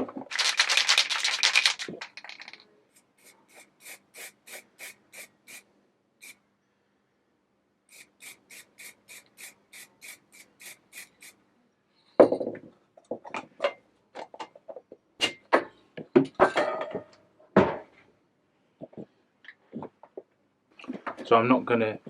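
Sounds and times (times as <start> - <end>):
hand rubbing strokes: 0.3 - 5.6, 7.9 - 11.4.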